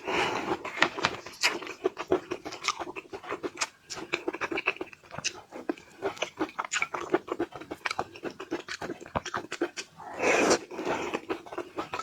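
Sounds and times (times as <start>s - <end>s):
wet chewing and lip smacks: 1.3s - 10.0s, 10.6s - 12.0s
mouth sucking: 10.0s - 11.2s.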